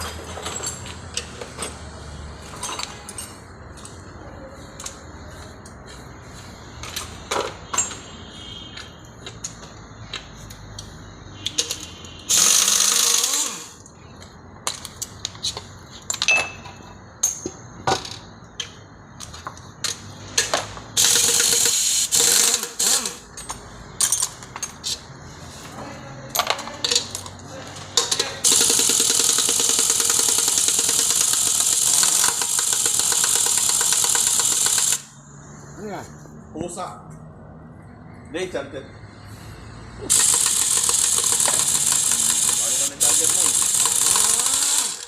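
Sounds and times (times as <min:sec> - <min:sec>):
metal tools clinking and knocking: 0:00.0 - 0:05.8, 0:06.8 - 0:08.0, 0:14.6 - 0:25.1, 0:26.3 - 0:35.0
loud steady machine noise: 0:12.3 - 0:13.8, 0:28.4 - 0:35.2, 0:40.1 - 0:45.0.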